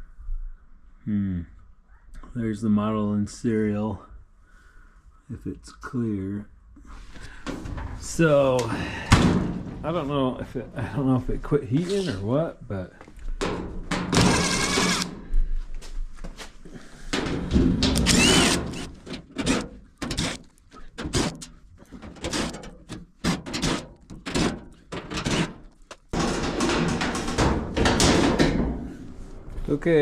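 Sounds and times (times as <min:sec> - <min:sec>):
knocks and clatter: 0:07.4 - 0:10.0, 0:13.4 - 0:15.2, 0:17.1 - 0:29.6
power drill bursts: 0:14.2 - 0:15.2, 0:17.9 - 0:20.4.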